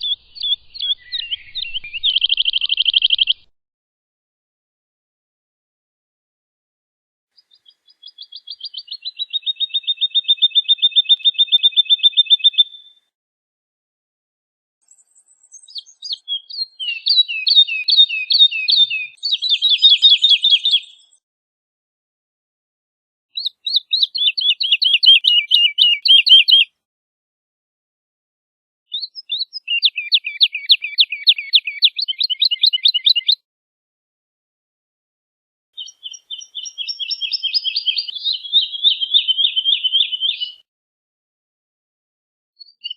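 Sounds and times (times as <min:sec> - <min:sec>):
bird singing trills: 0:00.0 - 0:03.4, 0:07.4 - 0:13.0, 0:14.8 - 0:21.2, 0:23.4 - 0:26.7, 0:28.9 - 0:33.4, 0:35.8 - 0:40.6.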